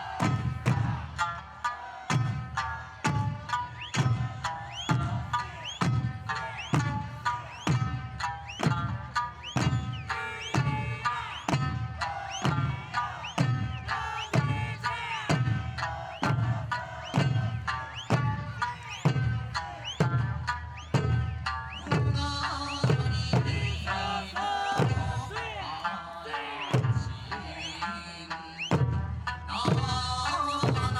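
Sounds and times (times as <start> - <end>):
music with steady bass drum beat: 3.0 - 24.2.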